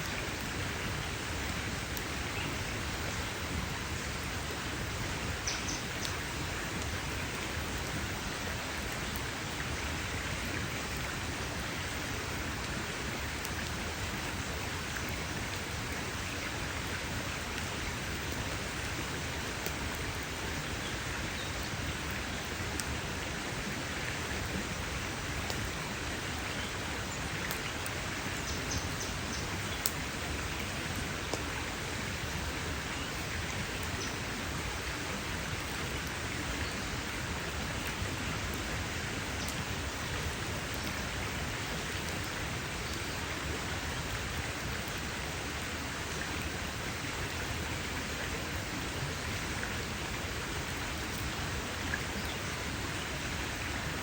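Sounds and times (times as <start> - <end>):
campfire crackling and popping: 3.3 - 32.4.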